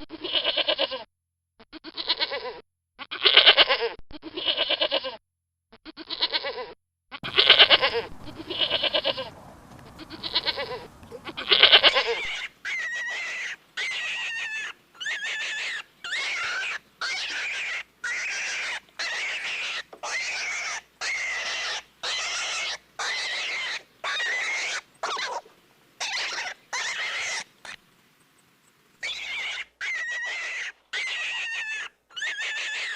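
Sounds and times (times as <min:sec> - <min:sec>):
livestock bleating: 0:00.1 - 0:01.0, 0:01.8 - 0:05.2, 0:05.9 - 0:24.5.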